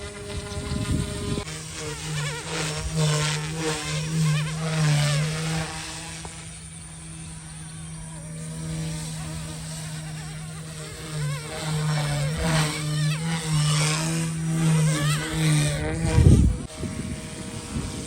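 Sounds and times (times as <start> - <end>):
rc helicopter buzzing hum: 0.0 - 18.0
wavering whine: 0.0 - 18.0.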